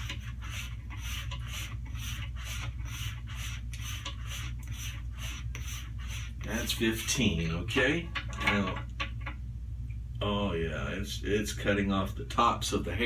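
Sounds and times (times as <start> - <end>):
razor swishing on strop: 0.0 - 7.4.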